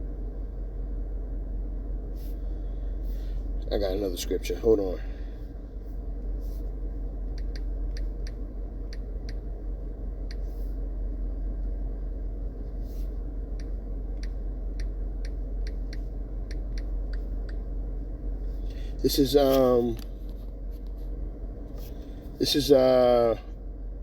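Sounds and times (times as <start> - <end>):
low hum: 0.0 - 24.0
soft rustles: 5.8 - 6.8, 19.9 - 22.4.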